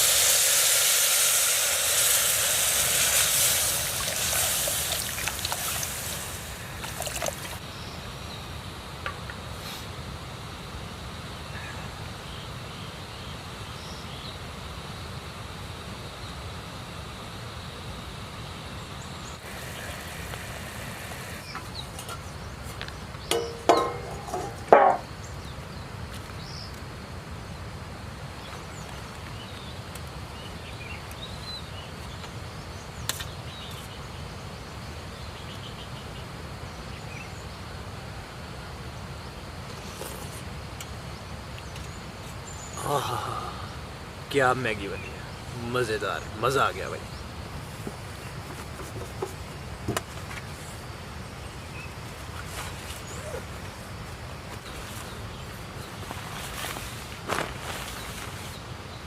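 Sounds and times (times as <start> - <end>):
river flowing: 0.0 - 7.6.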